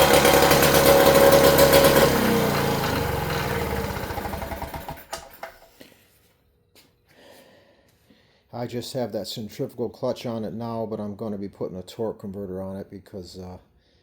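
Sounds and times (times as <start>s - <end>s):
two-stroke engine spinning down: 0.0s - 5.5s.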